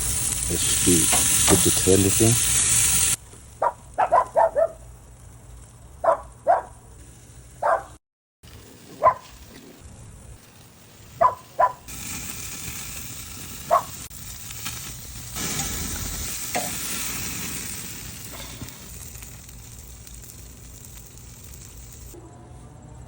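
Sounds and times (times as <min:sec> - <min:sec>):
meat sizzling on a grill: 0:00.0 - 0:03.6, 0:08.5 - 0:22.2
dog barking in sharp yelps: 0:03.6 - 0:04.8, 0:06.0 - 0:06.8, 0:07.6 - 0:08.0, 0:09.0 - 0:09.3, 0:11.2 - 0:11.9, 0:13.7 - 0:14.0.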